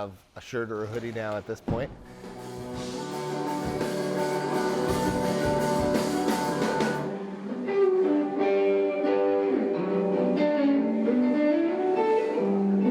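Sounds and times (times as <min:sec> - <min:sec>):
drums: 0:00.8 - 0:07.2
electric guitar notes ringing: 0:02.1 - 0:12.9.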